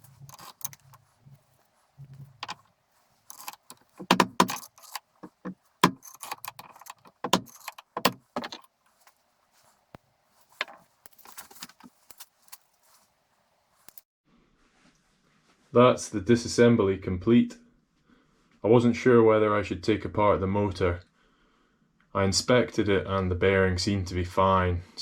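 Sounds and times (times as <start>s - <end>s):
metal parts and tools clattering: 0.0s - 1.4s, 2.0s - 9.2s, 10.4s - 12.7s.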